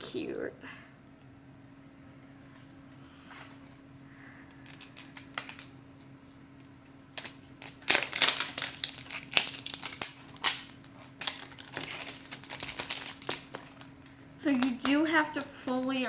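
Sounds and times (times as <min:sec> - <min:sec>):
plastic wrapper crinkling: 0:04.5 - 0:05.8, 0:07.2 - 0:15.5.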